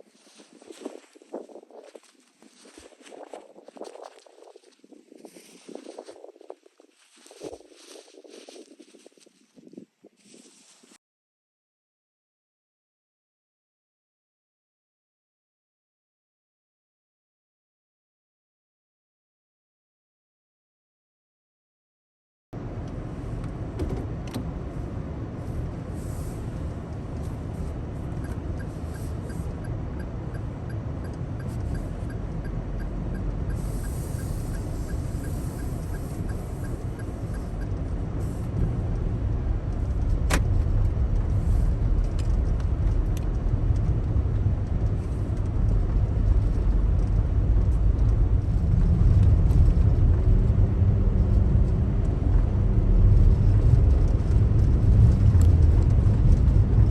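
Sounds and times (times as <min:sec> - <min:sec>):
car engine and tyres rumbling: 0:00.0 - 0:10.8, 0:22.6 - 0:56.9.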